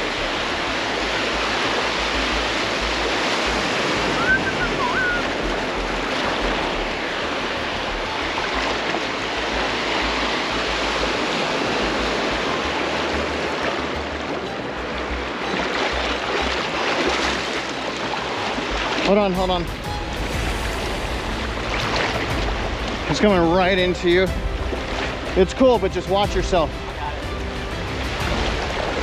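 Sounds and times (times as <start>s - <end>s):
ocean surf washing on beach: 0.0s - 29.0s
wavering high-pitched call: 4.0s - 6.9s.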